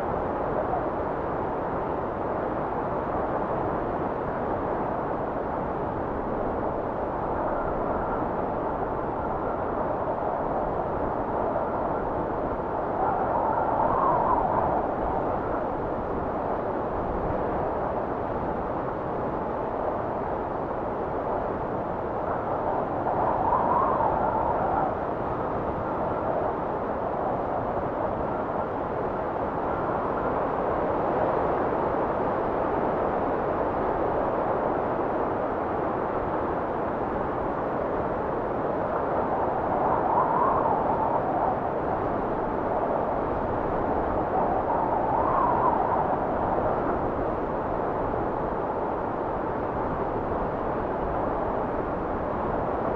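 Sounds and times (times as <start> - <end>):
wind blowing: 5.9 - 19.0, 21.9 - 30.2, 36.0 - 52.9.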